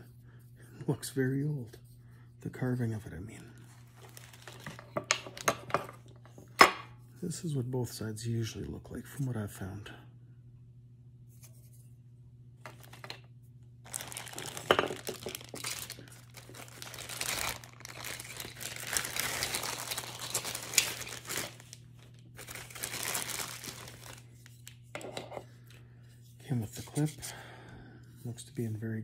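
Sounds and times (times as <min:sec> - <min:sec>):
faint low hum: 0:00.0 - 0:29.0
crinkling rustling handling noise: 0:03.1 - 0:06.4, 0:12.6 - 0:24.9.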